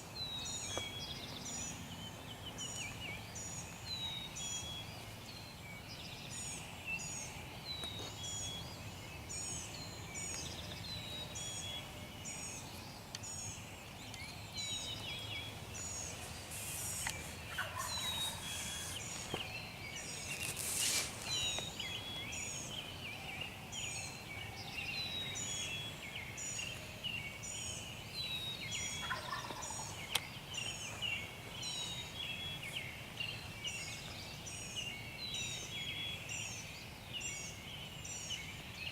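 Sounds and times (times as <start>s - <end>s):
songbirds chirping: 0.0s - 38.9s
turkey gobbling: 17.5s - 18.4s, 29.0s - 29.9s.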